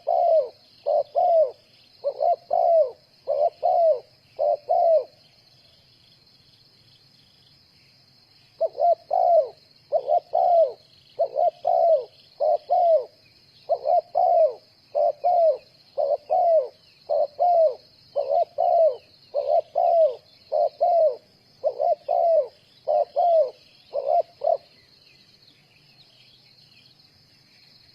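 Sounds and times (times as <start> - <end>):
dove cooing: 0.0 - 5.2, 8.6 - 24.9
high insect trill: 0.0 - 27.9.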